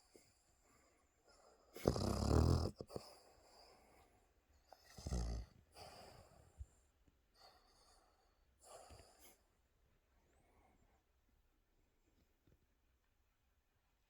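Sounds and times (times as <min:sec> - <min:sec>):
dog snoring: 0:01.7 - 0:03.7, 0:04.7 - 0:06.1.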